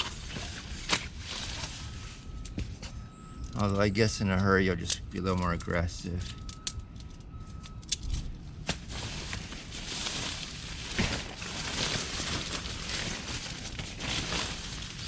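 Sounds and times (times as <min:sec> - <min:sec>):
fabric rustling: 0:08.8 - 0:15.0.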